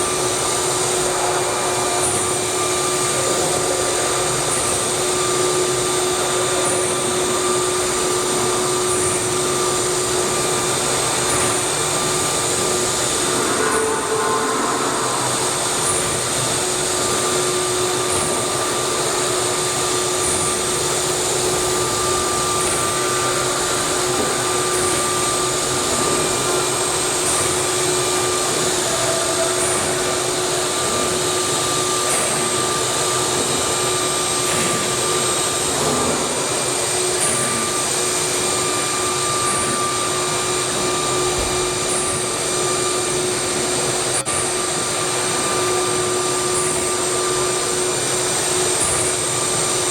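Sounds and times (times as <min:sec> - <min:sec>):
router machine noise: 0:00.0 - 0:49.9
high-speed spindle tone: 0:05.0 - 0:19.1.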